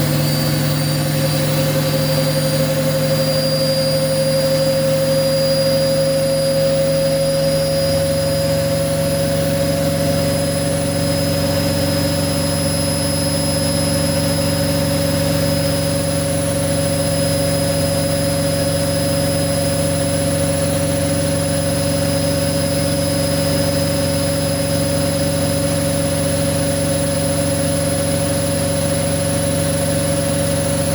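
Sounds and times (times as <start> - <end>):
low hum: 0.0 - 16.8
washing machine high whine: 0.0 - 30.9.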